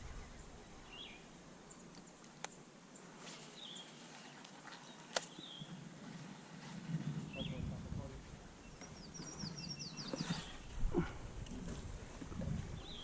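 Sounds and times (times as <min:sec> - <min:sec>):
bird chirping: 0:00.0 - 0:04.0, 0:04.8 - 0:05.8, 0:08.6 - 0:10.7, 0:12.8 - 0:13.0
faint outdoor ambience: 0:00.0 - 0:13.0.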